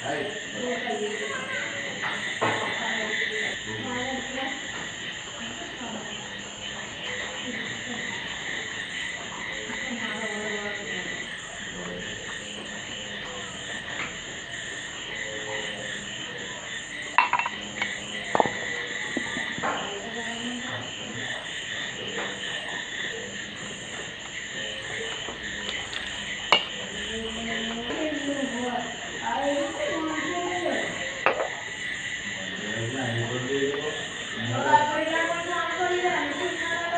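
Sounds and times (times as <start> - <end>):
frogs croaking: 0.0 - 36.9
insects: 0.0 - 36.9.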